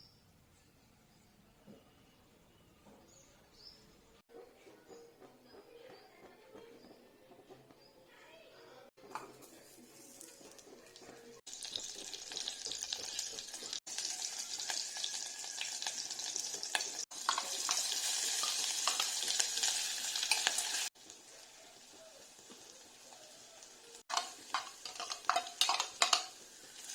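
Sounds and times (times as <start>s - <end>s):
spoon scraping a pan: 9.0s - 10.6s, 11.6s - 20.9s, 24.1s - 26.9s
food sizzling in hot oil: 9.8s - 26.9s.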